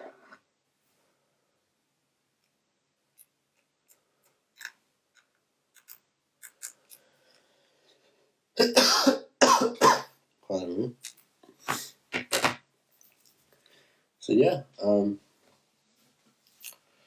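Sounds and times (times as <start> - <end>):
loud cough: 8.6 - 10.1.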